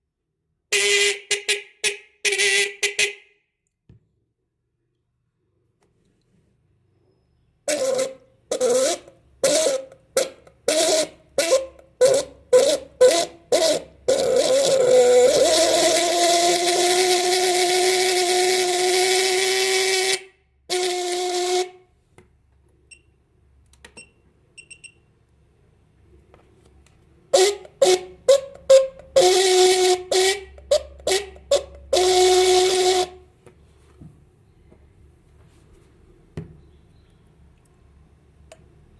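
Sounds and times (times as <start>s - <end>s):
car horn honking: 0.7s - 3.4s.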